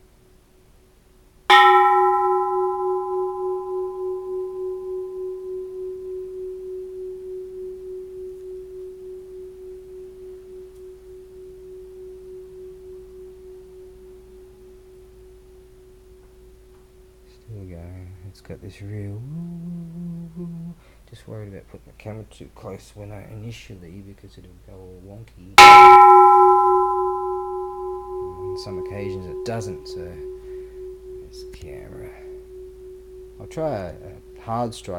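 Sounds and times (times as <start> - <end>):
temple bell ringing: 1.5 - 17.0, 25.6 - 34.9.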